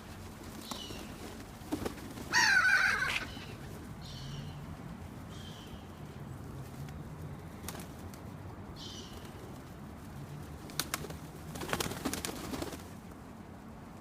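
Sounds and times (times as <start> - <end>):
pigeon wings clapping and flapping: 0.0 - 3.8, 6.6 - 8.3, 9.2 - 13.0.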